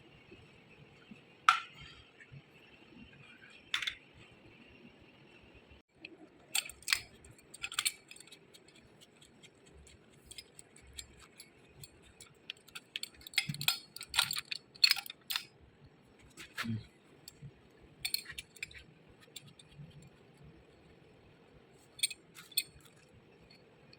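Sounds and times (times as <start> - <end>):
metal parts clinking: 6.5 - 15.5, 18.0 - 20.0, 21.9 - 23.6.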